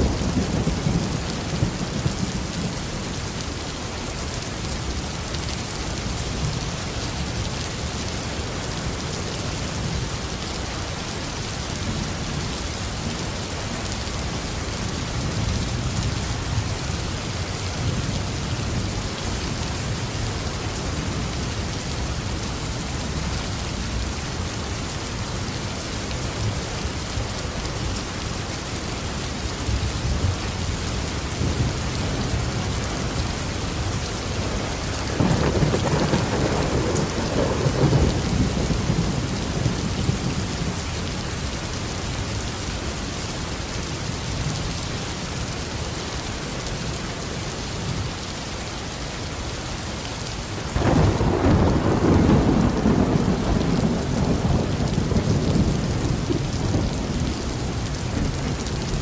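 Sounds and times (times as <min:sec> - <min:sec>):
heavy rain on a roof: 0:00.0 - 0:59.0
thunder rolling: 0:34.8 - 0:40.4, 0:50.8 - 0:57.4.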